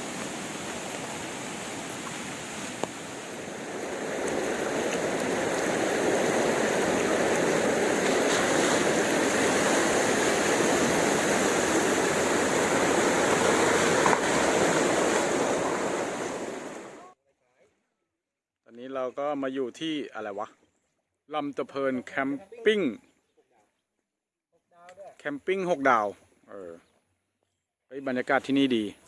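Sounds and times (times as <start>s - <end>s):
waterfall rushing and splashing: 0.0s - 17.0s.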